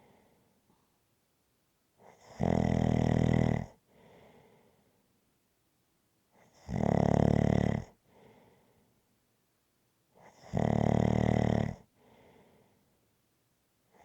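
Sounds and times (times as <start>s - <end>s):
quiet breath: 0.0s - 1.0s, 3.7s - 5.3s, 7.9s - 9.2s, 11.8s - 13.2s.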